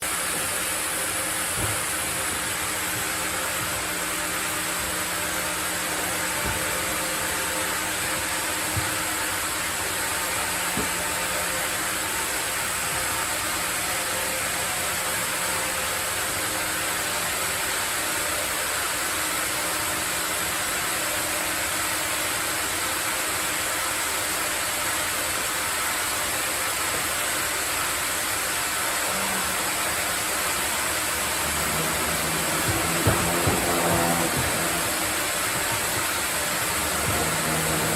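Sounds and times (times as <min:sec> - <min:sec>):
sawmill machinery hissing: 0:00.0 - 0:37.9.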